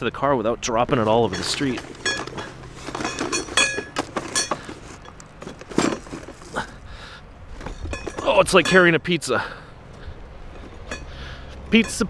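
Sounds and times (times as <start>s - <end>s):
metal tools rattling in a bucket: 0.9s - 6.7s, 7.5s - 9.0s, 11.8s - 12.0s.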